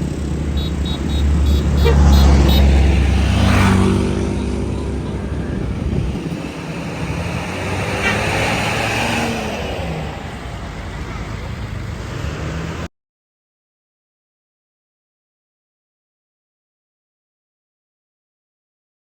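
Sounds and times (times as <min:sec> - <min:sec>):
bus engine rumbling past: 0:00.0 - 0:12.9.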